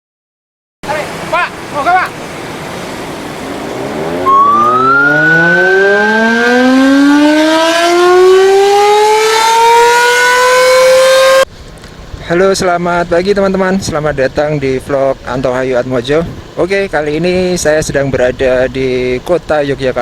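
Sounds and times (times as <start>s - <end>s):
siren winding up: 3.8s - 11.5s.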